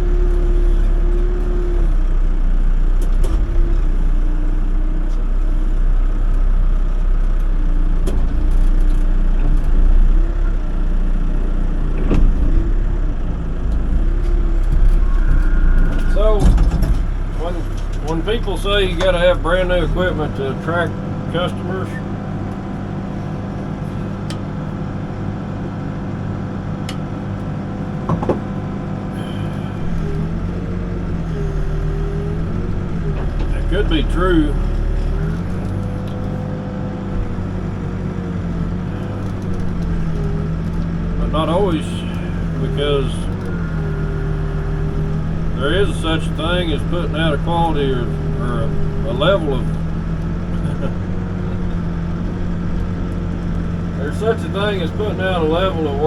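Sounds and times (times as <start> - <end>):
backhoe engine under load: 0.0 - 56.0
machine knocks: 28.1 - 28.4.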